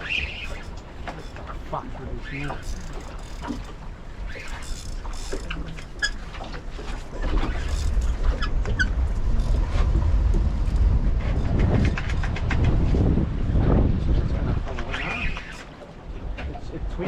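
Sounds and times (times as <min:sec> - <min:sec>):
short squeaks: 0:04.3 - 0:06.3, 0:14.8 - 0:15.7
wind buffeting microphone: 0:05.0 - 0:17.0.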